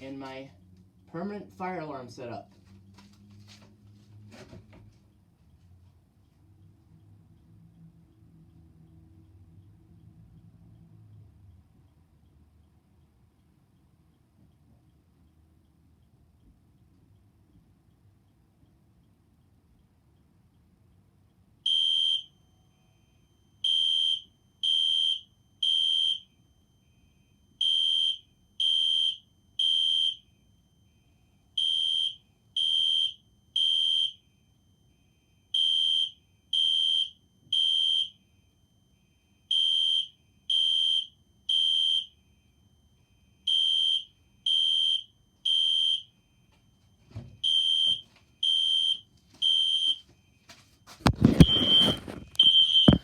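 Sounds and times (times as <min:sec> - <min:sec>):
fire alarm horn beeps: 0:21.6 - 0:50.5, 0:51.2 - 0:53.0.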